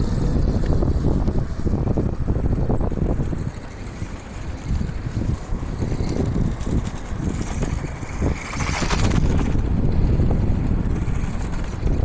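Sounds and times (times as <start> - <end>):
wind rumble on microphone: 0.0 - 12.0
toy car electric motor running: 4.7 - 9.6.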